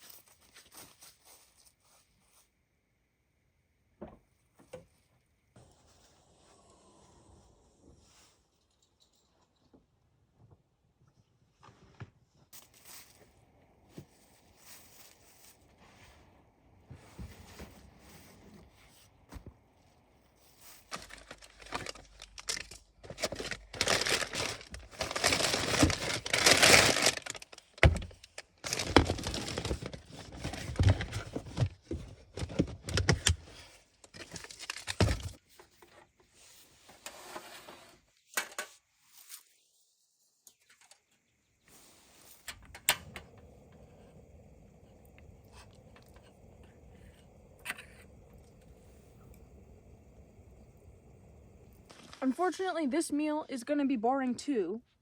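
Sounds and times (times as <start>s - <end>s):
packaging crinkling and tearing: 20.6s - 35.4s.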